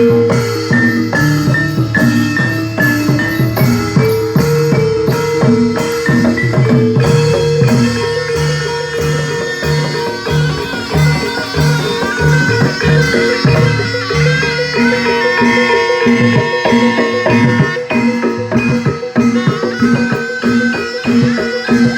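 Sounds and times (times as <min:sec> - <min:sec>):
drums: 0:00.0 - 0:21.9
higher melody line: 0:00.0 - 0:21.9
tuned metal mallet percussion: 0:00.0 - 0:21.9.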